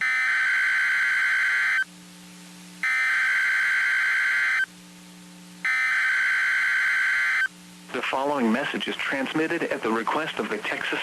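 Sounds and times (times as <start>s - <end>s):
buzzing digital data bursts: 0.0s - 1.9s, 2.8s - 4.7s, 5.6s - 7.5s
faint low hum: 0.0s - 11.0s.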